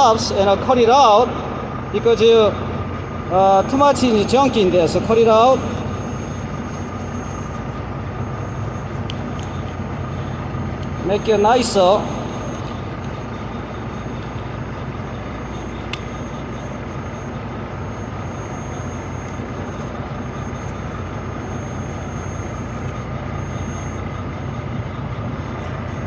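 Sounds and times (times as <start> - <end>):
engine idling: 0.0 - 26.0
faint click: 15.9 - 16.1.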